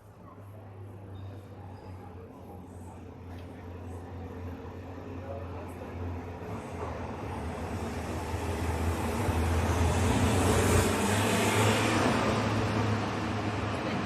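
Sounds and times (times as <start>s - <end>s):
road vehicle passing: 6.2s - 14.0s.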